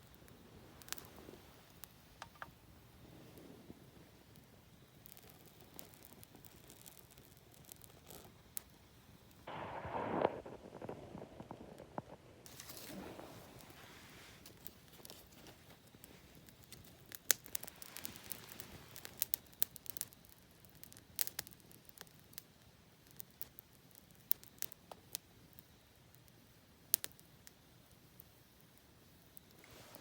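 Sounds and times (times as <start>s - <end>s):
bonfire crackling: 0.0s - 30.0s.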